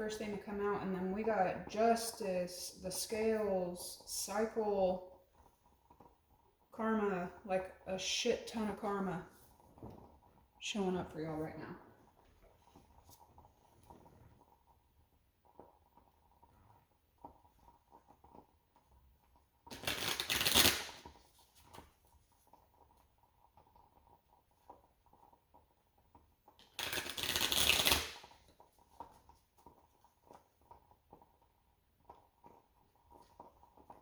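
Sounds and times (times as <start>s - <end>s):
cards being riffle shuffled: 19.7s - 21.7s, 26.6s - 28.3s
cards clicking and tapping: 26.6s - 28.2s.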